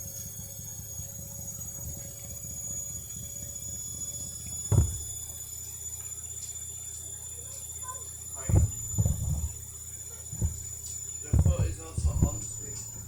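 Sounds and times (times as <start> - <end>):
washing machine spinning: 0.0 - 13.0
loud thump: 4.7 - 5.2, 8.5 - 9.6, 10.4 - 10.7, 11.3 - 12.6.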